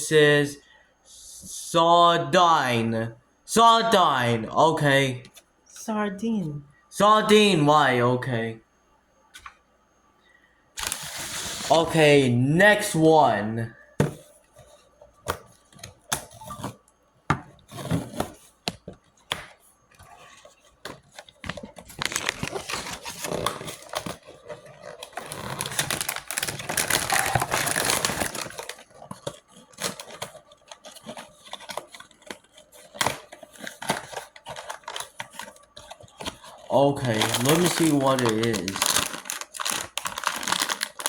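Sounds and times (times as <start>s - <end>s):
foil bag tearing and crinkling: 10.8s - 11.9s, 21.4s - 41.0s.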